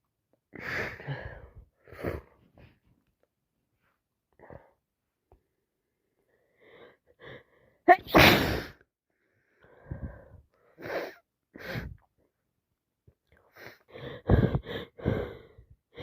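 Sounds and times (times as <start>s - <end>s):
woman sneezing: 7.9s - 8.8s
woman sniffing and breathing: 13.5s - 16.0s.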